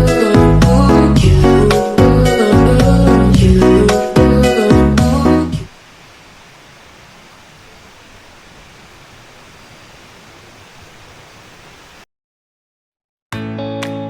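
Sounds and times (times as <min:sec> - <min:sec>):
background music: 0:00.0 - 0:05.7
rushing hiss of flowing water: 0:00.0 - 0:12.0.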